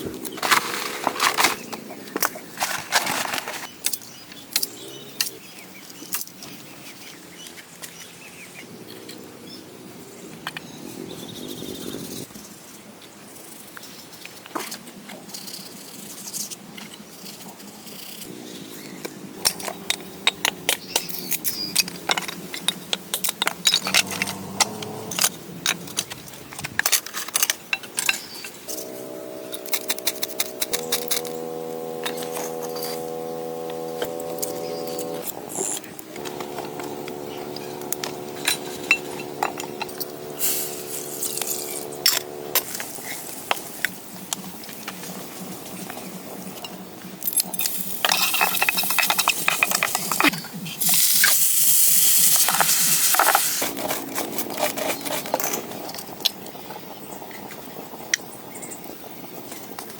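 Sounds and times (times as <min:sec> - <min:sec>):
pitched drone: 0:28.6 - 0:42.8.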